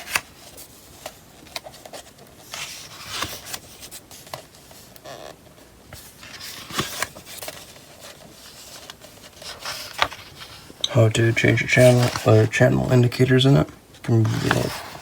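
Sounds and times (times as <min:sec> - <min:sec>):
paper pages rustling: 0:00.0 - 0:15.0
paper crackles: 0:06.0 - 0:12.7, 0:14.1 - 0:15.0.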